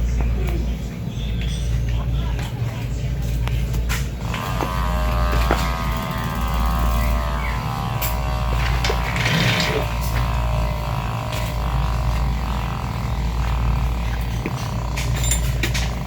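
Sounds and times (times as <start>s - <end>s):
bike freehub clicking buzz: 4.2s - 16.0s.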